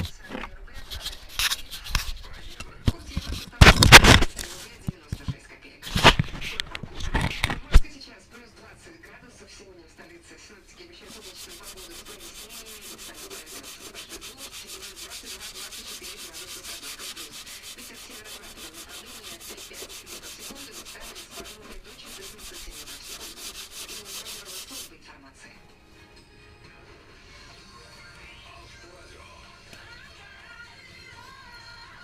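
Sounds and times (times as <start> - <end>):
sanding car body panel: 11.1 - 24.9.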